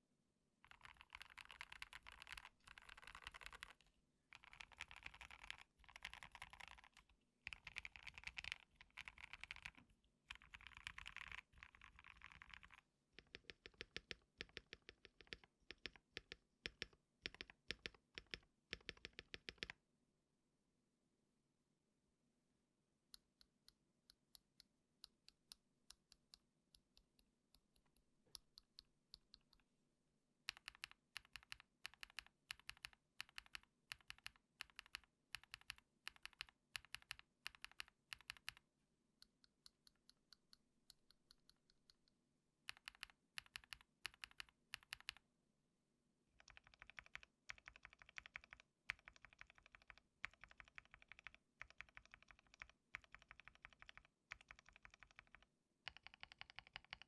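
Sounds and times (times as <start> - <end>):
mechanical keyboard typing: 0.6 - 19.8, 30.5 - 38.6, 42.7 - 45.2, 46.4 - 57.0.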